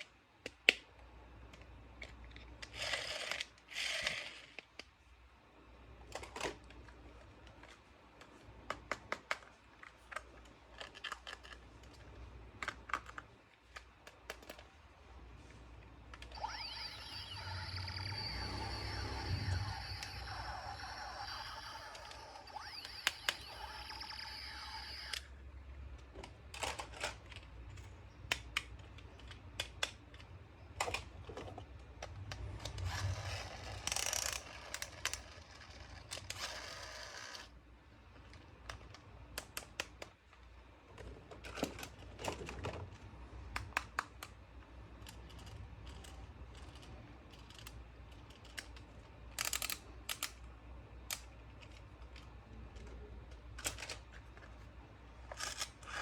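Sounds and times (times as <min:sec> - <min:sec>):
plastic toys clicking and snapping: 0:06.0 - 0:14.7, 0:25.9 - 0:37.5, 0:38.2 - 0:54.6, 0:55.3 - 0:56.0.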